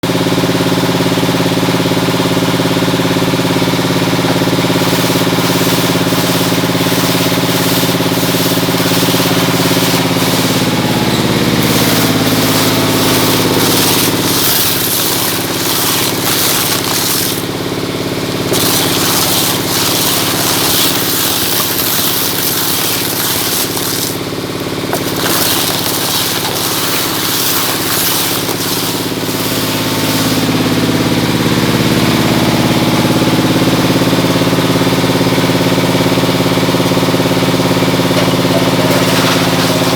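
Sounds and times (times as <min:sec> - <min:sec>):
shredder motor hum: 0:00.1 - 0:33.5, 0:37.0 - 0:39.9
grinding crackling of shredding: 0:03.4 - 0:32.1, 0:37.8 - 0:39.9.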